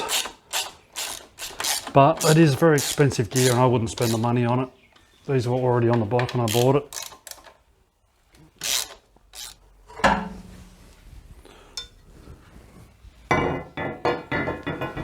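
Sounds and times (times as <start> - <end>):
metal tools clanking: 0.0 - 4.4.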